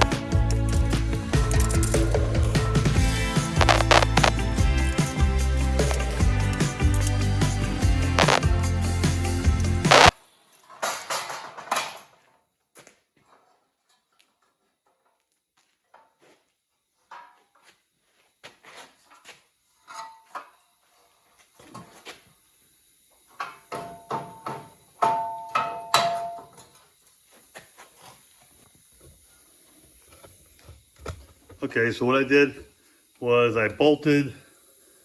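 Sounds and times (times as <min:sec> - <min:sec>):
steel parts and tools clinking: 0:00.0 - 0:02.7.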